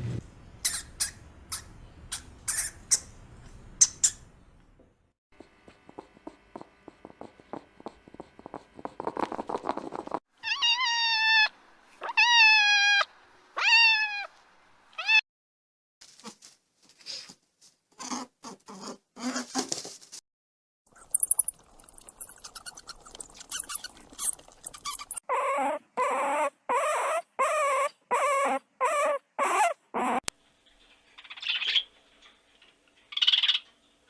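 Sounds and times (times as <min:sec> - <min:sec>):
cat meowing: 0:10.4 - 0:14.3.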